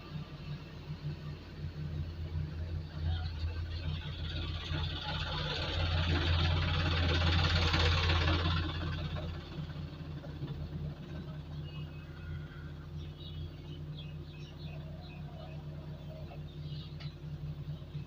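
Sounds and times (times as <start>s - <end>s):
low electrical hum: 0.0s - 18.0s.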